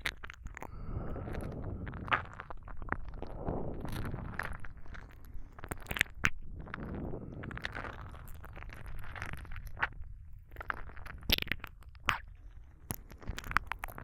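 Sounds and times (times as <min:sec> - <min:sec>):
soft breathing: 0:00.5 - 0:05.8, 0:06.6 - 0:08.4.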